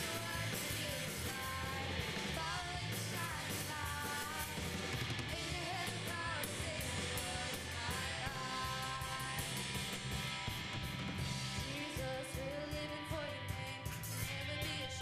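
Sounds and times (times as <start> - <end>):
person singing: 0.0 - 9.8, 11.6 - 15.0
drum beat: 0.0 - 12.6
guitar: 0.0 - 15.0
rock music: 0.0 - 15.0.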